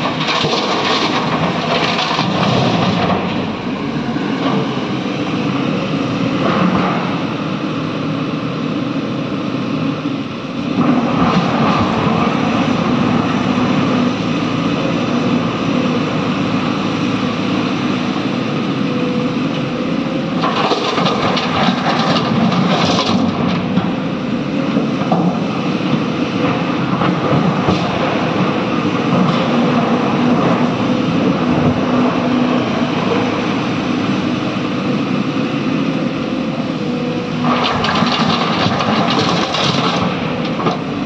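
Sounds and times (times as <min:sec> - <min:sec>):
clatter and rattling: 0:00.0 - 0:03.3, 0:20.4 - 0:23.9, 0:37.4 - 0:40.9
diesel machinery running: 0:00.0 - 0:41.0.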